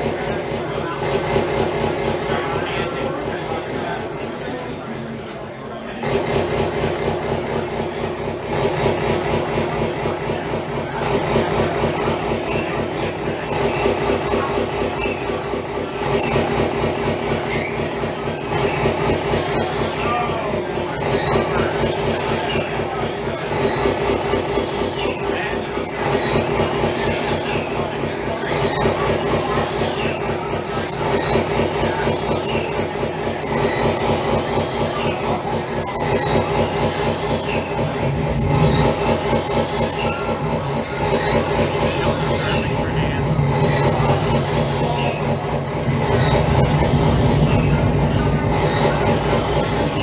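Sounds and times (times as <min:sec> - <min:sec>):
fast-pulsing low drone: 0:08.6 - 0:50.0
high squealing tones: 0:11.8 - 0:50.0.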